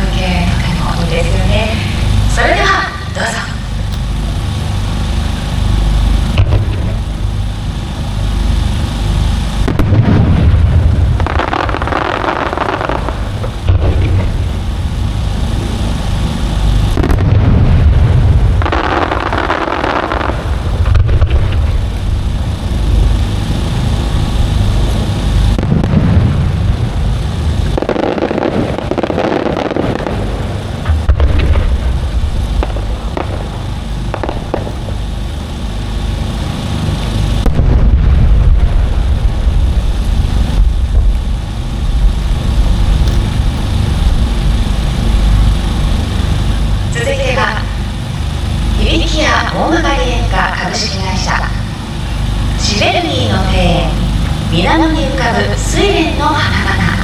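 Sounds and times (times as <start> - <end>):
fireworks hissing: 0.0 - 57.0
firework shells booming: 2.1 - 47.0.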